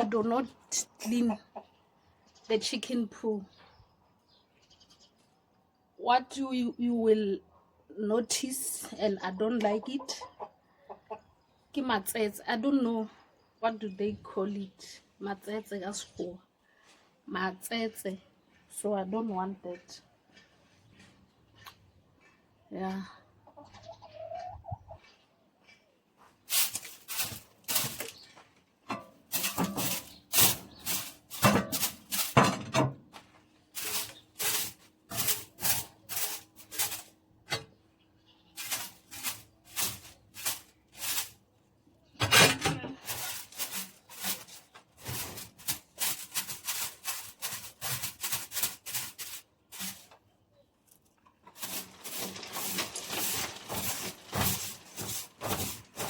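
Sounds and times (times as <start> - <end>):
scraping strokes on floor: 26.5 - 28.2, 29.3 - 32.5, 33.7 - 37.2, 38.6 - 41.4, 43.0 - 50.2, 51.5 - 56.0.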